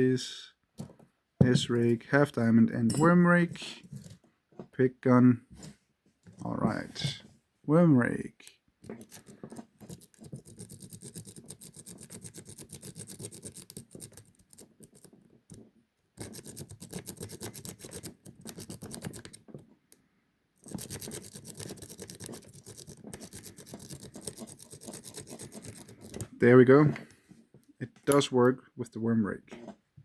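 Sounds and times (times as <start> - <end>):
metallic scratching in a lock: 8.8 - 15.1, 16.2 - 19.5, 20.6 - 26.4.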